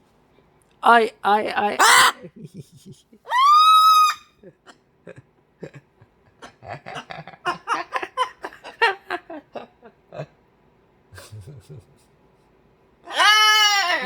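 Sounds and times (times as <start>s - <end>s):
cockatoo chattering: 1.7s - 2.3s
cockatoo screeching: 1.8s - 2.2s, 3.3s - 4.4s, 13.1s - 14.0s.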